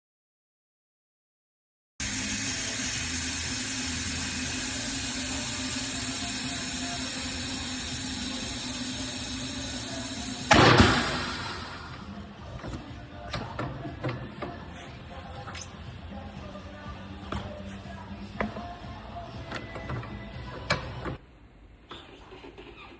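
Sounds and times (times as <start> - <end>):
compressed air hissing: 2.0 - 12.2.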